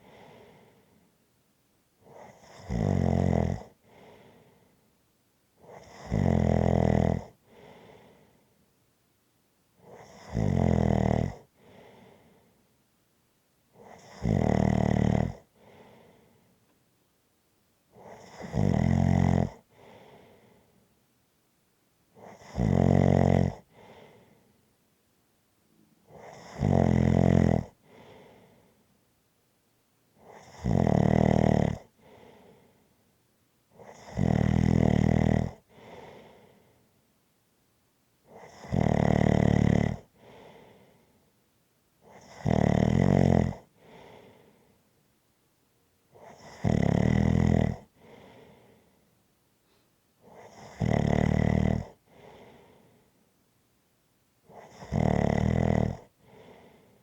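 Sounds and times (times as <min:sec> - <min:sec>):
person snoring: 0:02.0 - 0:03.8, 0:05.6 - 0:07.8, 0:09.9 - 0:12.0, 0:13.8 - 0:16.0, 0:18.0 - 0:20.2, 0:22.2 - 0:24.2, 0:26.1 - 0:28.5, 0:30.2 - 0:32.5, 0:33.8 - 0:36.4, 0:38.3 - 0:40.7, 0:42.1 - 0:44.4, 0:46.2 - 0:48.6, 0:50.3 - 0:52.8, 0:54.5 - 0:56.7.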